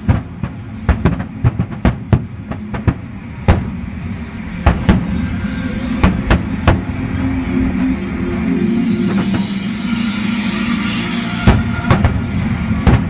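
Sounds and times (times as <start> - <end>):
fireworks bursting: 0.0 - 3.8, 11.5 - 13.0
faint music: 0.0 - 13.0.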